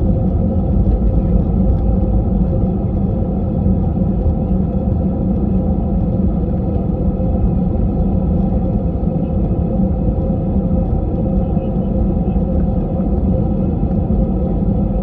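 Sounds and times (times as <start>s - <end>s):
airliner cabin engine rumble: 0.0s - 15.0s.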